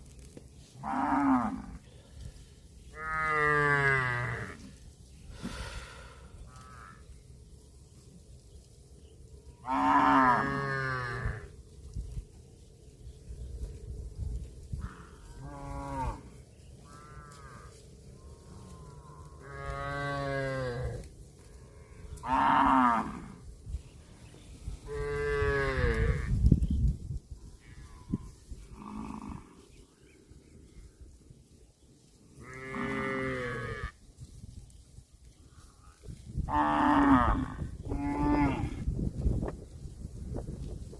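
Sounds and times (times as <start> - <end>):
cattle mooing: 9.6 - 11.5, 32.4 - 34.0, 36.5 - 38.8.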